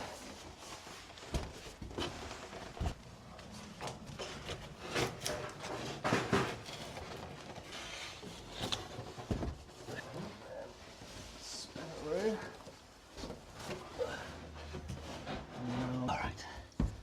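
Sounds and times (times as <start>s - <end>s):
timber knocks and scrapes: 3.8s - 10.4s.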